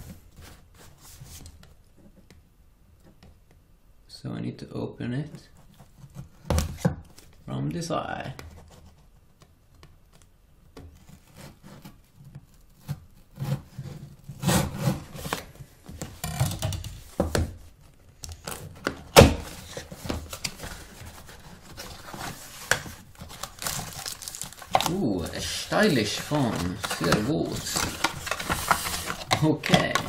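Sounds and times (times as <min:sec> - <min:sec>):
cardboard scraping against cardboard: 0:10.9 - 0:30.0.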